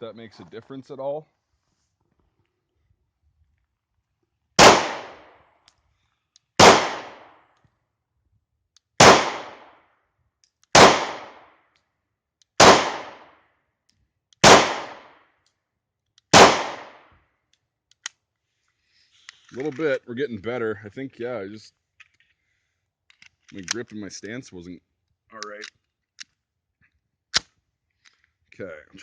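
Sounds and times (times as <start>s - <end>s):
pistol shots: 4.6s - 5.4s, 6.6s - 7.4s, 9.0s - 9.8s, 10.7s - 11.5s, 12.6s - 13.3s, 14.4s - 15.2s, 16.3s - 17.1s.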